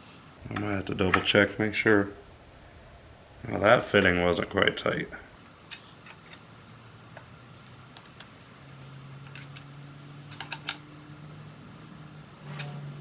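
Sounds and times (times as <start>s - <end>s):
low steady hum: 5.3s - 13.0s.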